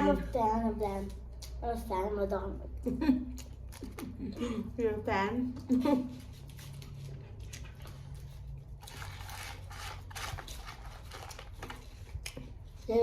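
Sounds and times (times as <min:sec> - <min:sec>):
low steady hum: 0:00.0 - 0:13.0
soft chewing: 0:03.2 - 0:04.4, 0:05.5 - 0:12.9
food packaging crinkling: 0:06.3 - 0:12.3.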